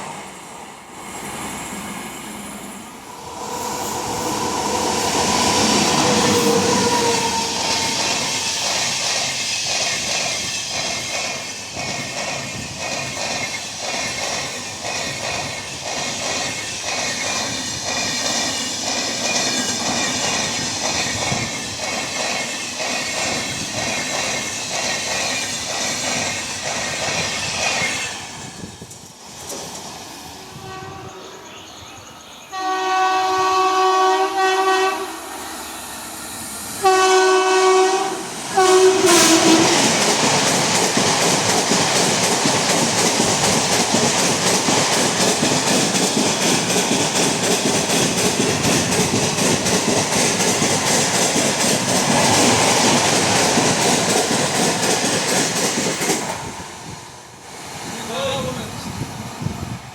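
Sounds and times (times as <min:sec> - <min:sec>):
train wheels clickety-clack: 0:03.1 - 0:30.3, 0:36.8 - 0:59.9
locomotive horn blasts: 0:32.5 - 0:35.2, 0:36.8 - 0:39.6.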